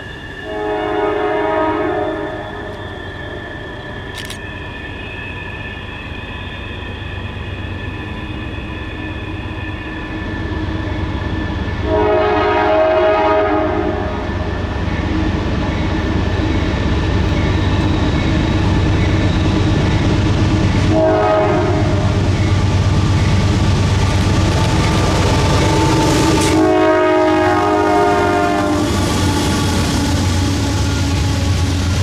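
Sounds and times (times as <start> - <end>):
rail noise: 0.0 - 32.0
locomotive air horn: 0.4 - 3.4, 11.8 - 14.4, 20.9 - 22.3, 24.0 - 32.0
locomotive engine rumble: 14.2 - 32.0.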